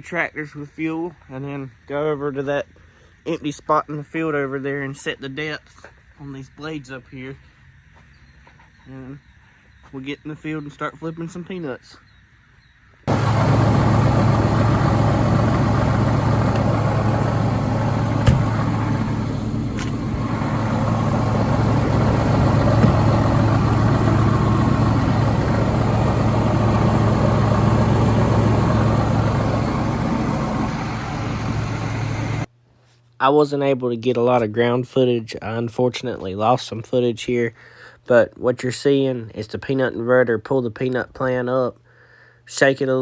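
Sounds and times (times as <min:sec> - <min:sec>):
tractor diesel engine running: 0:13.1 - 0:32.5.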